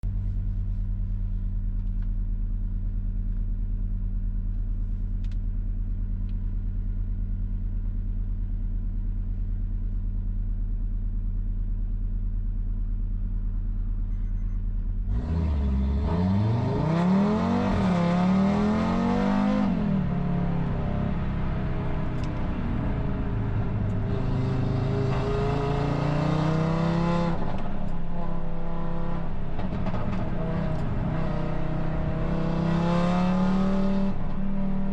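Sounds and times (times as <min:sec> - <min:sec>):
car engine revving: 0:15.1 - 0:34.9.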